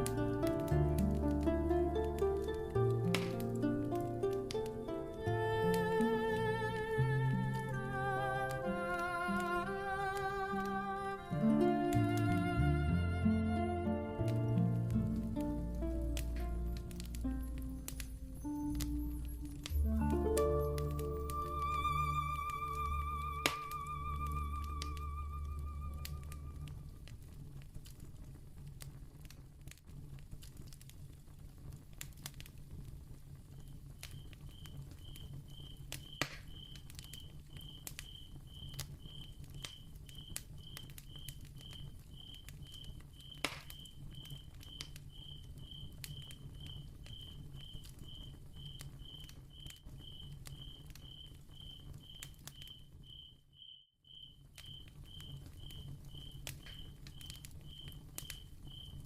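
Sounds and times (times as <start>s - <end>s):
crackling pops and clicks: 0.0s - 12.7s, 13.9s - 53.3s, 54.2s - 59.0s
cricket chirping: 15.0s - 27.0s, 33.6s - 59.0s.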